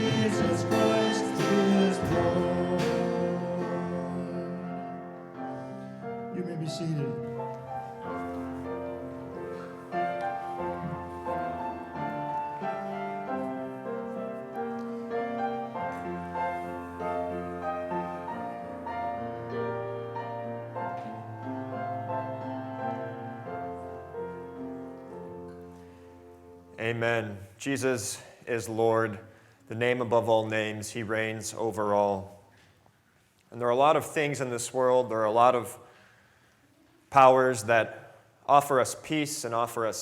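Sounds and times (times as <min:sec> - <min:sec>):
piano chords over bass line: 0:00.0 - 0:25.5.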